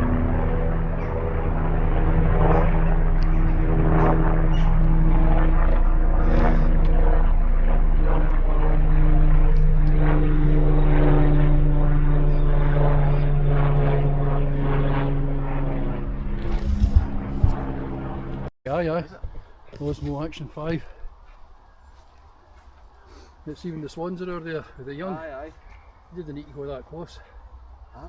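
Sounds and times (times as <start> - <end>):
engine drone: 0.0 - 18.5.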